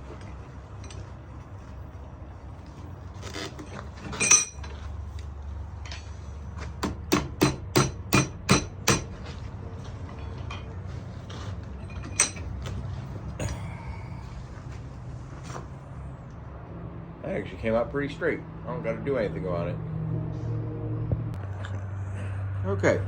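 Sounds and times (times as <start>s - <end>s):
hammer striking anvil: 6.8s - 9.1s.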